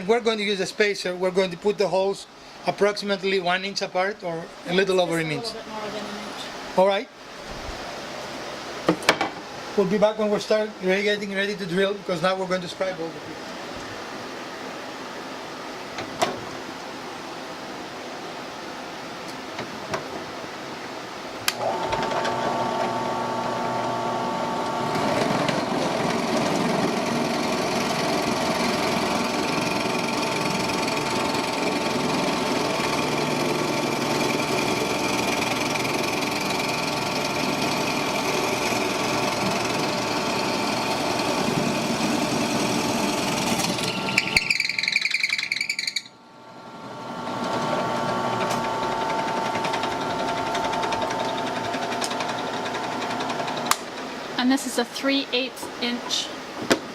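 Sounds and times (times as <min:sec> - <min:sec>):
electric drill whirring: 0:21.5 - 0:45.9, 0:47.0 - 0:53.8.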